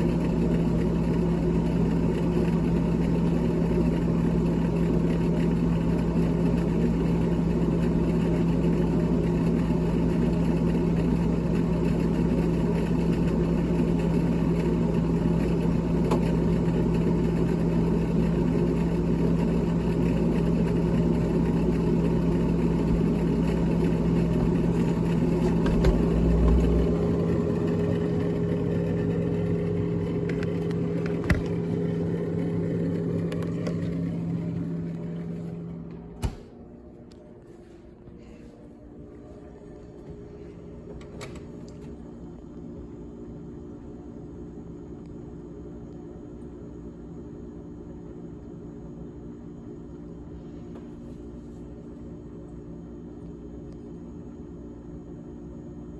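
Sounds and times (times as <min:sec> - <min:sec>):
electric motor hum: 0:00.0 - 0:36.7
deep rumble: 0:24.2 - 0:36.1.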